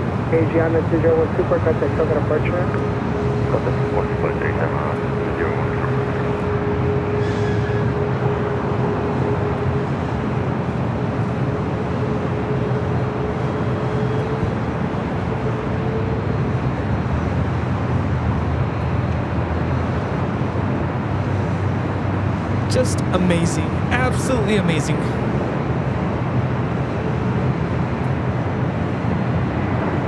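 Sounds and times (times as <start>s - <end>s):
jet engines rumbling: 0.0s - 16.8s.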